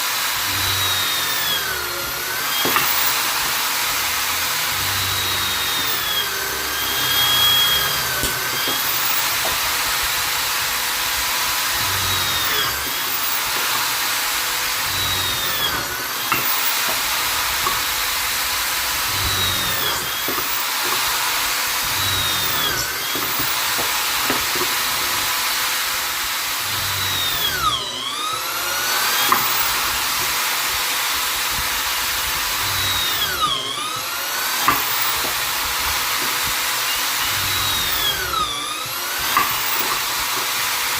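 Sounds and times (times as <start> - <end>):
electric drill motor whine: 0.0 - 40.9.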